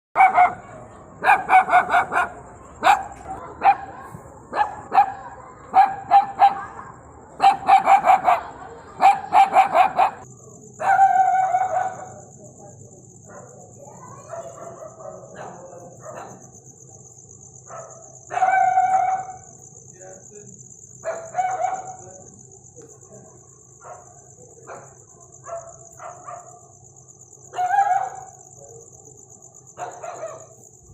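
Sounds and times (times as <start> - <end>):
puppy barking: 0.2 - 12.2, 14.2 - 16.4, 17.7 - 19.5, 21.0 - 22.0, 23.8 - 26.6, 27.5 - 28.3, 29.8 - 30.6.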